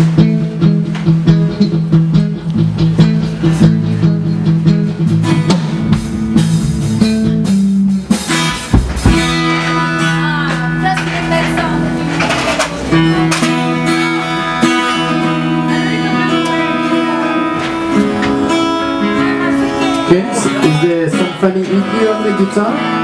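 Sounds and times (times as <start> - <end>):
amplified acoustic guitar: 0.0 - 23.0
low thump: 8.7 - 9.4.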